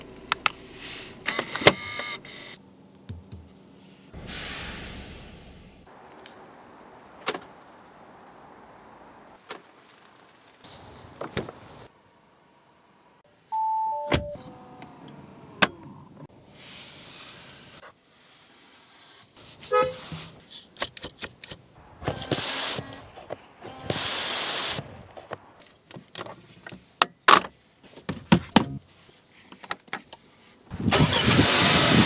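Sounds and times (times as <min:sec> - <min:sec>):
sharp clicks and knocks: 0:03.0 - 0:03.5
motor whirring: 0:30.8 - 0:32.0.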